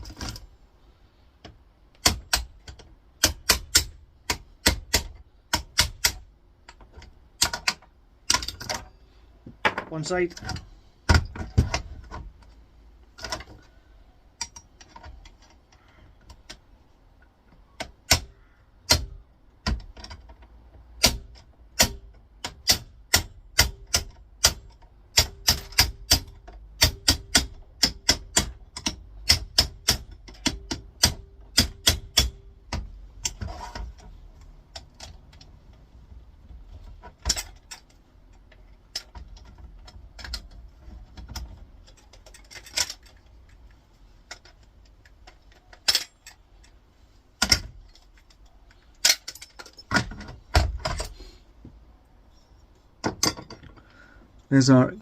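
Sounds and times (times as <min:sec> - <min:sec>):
screwdriver tapping on metal: 0:01.4 - 0:08.9, 0:21.0 - 0:34.1.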